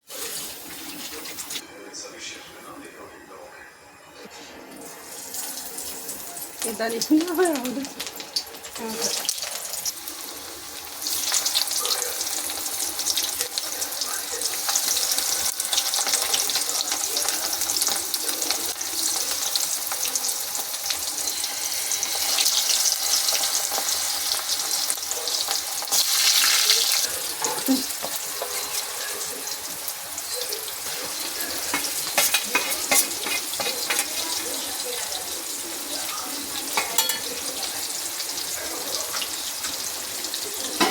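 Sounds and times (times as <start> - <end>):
vegetables sizzling in hot oil: 0.0 - 1.6, 4.8 - 40.9.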